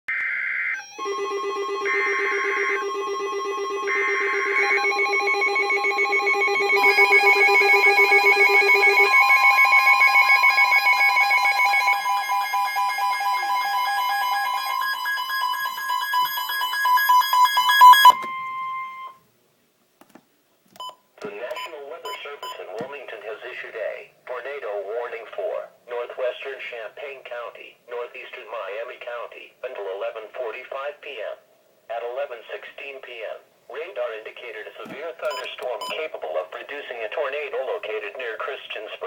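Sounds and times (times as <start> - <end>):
beeping and warbling alarm tones: 0.1 - 19.2, 34.9 - 36.1
steady warning tone: 0.8 - 19.2, 34.9 - 36.0.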